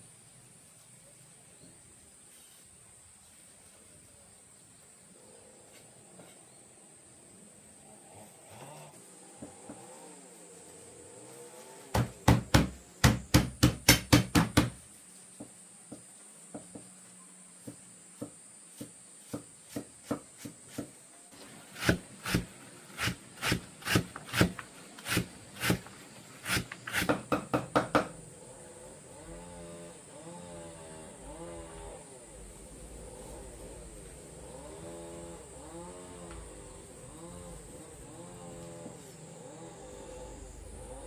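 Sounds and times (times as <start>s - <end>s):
chopping strikes on wood: 11.9s - 14.8s.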